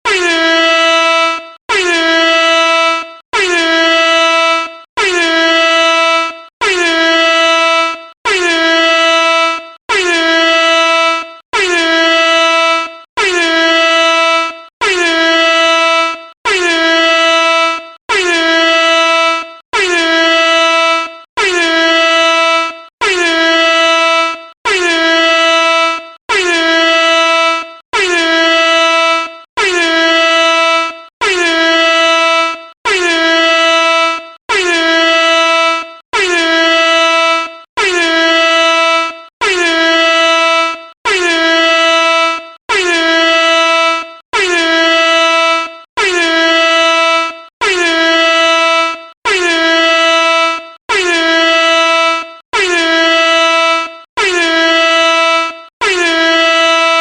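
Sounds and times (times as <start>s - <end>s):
air horn blasts: 0.0s - 57.0s.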